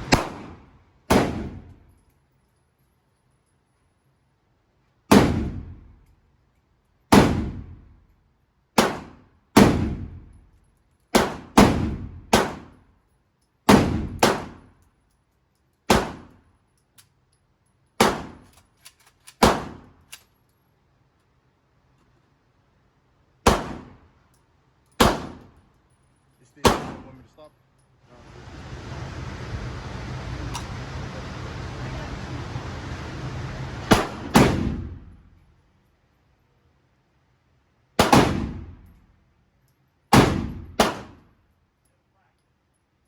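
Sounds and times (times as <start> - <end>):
rifle shots echoing: 0.0 - 1.8, 23.5 - 24.0, 25.0 - 25.5, 26.6 - 27.1, 33.9 - 35.1, 38.0 - 38.8, 40.1 - 41.2.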